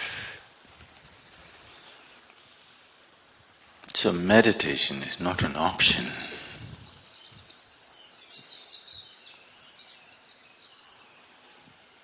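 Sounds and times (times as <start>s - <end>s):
birds twittering: 3.9s - 11.4s.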